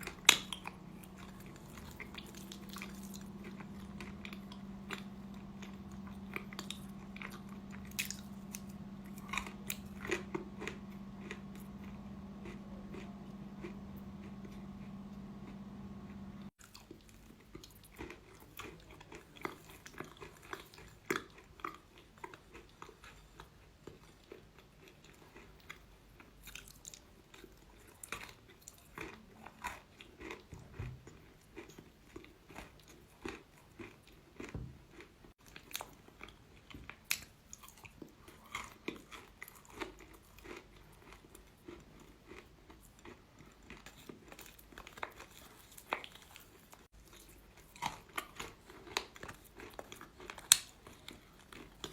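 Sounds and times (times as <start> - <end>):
low steady hum: 0.0 - 16.8.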